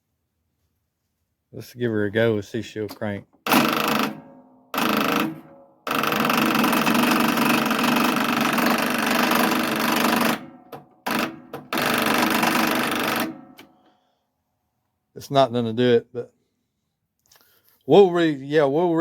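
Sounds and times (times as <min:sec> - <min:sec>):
lawnmower starter cranking engine: 0:02.9 - 0:13.8.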